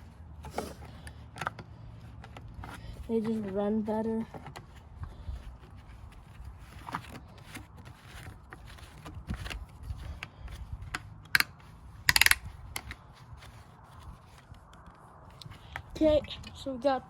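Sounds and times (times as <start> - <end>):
low wind rumble: 1.0 - 17.0
plastic cap clicks and rattles: 11.2 - 13.0.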